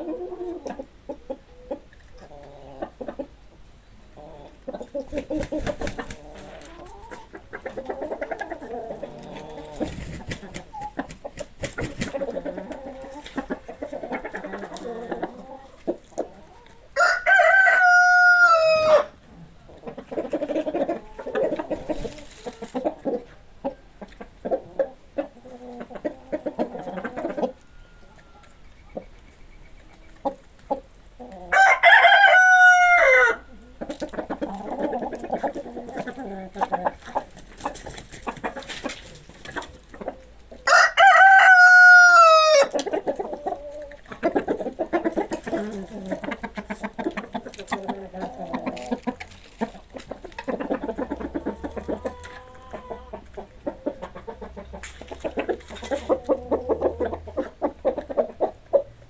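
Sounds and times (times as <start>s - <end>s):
chickens clucking: 0.0s - 59.0s
rooster crowing: 17.0s - 19.1s, 31.5s - 33.5s, 40.6s - 42.7s.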